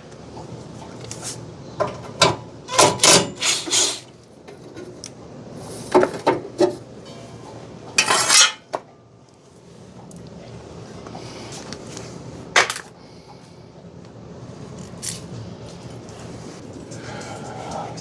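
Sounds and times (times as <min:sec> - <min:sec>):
metal scrape: 0:08.0 - 0:08.7.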